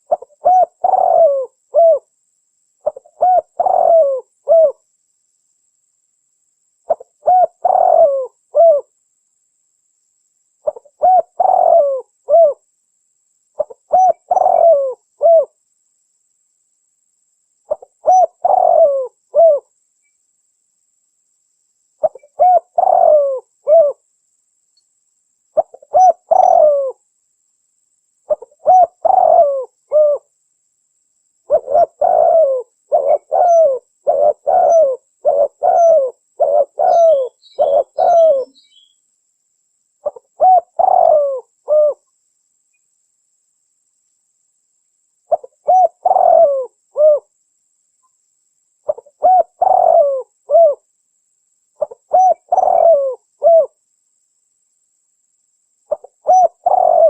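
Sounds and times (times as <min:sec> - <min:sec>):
dove cooing: 0:00.0 - 0:02.1, 0:02.8 - 0:04.8, 0:06.9 - 0:08.9, 0:10.6 - 0:12.6, 0:13.6 - 0:15.6, 0:17.7 - 0:19.7, 0:22.0 - 0:24.0, 0:25.6 - 0:27.0, 0:28.3 - 0:30.3, 0:31.5 - 0:38.9, 0:40.0 - 0:42.0, 0:45.3 - 0:47.3, 0:48.9 - 0:50.8, 0:51.8 - 0:53.8, 0:55.9 - 0:57.0.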